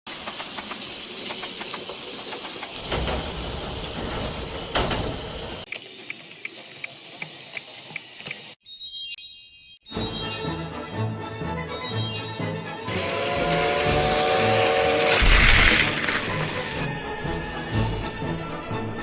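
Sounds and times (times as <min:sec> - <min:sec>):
toy train wheels clicking: 0:00.1 - 0:08.6, 0:12.9 - 0:17.7
toy train whirring: 0:00.1 - 0:08.6, 0:12.9 - 0:19.0.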